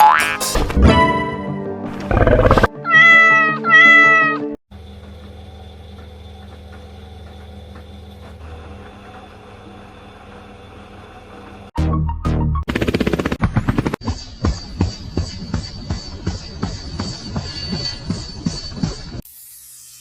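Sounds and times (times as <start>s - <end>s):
background music: 0.0s - 4.6s
cat meowing: 2.8s - 4.5s.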